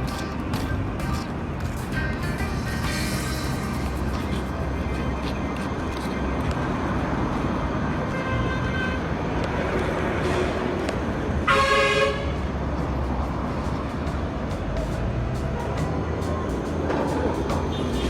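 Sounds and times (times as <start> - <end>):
street traffic rumble: 0.0 - 18.0
vehicle horn: 8.0 - 10.8, 11.4 - 12.5.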